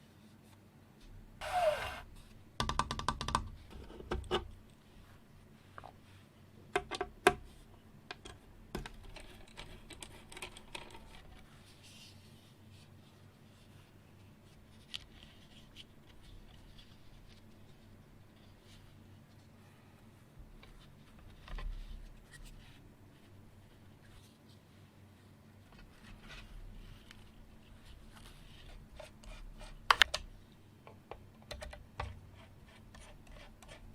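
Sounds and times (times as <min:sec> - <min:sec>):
keyboard parts clicking: 0:08.1 - 0:11.3.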